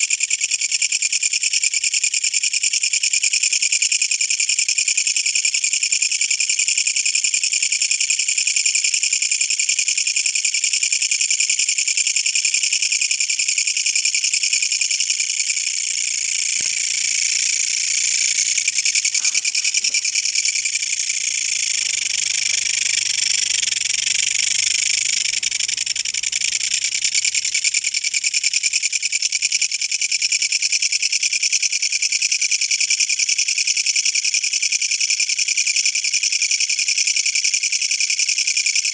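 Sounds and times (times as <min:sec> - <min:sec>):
katydid rasping buzz: 0:15.2 - 0:29.0.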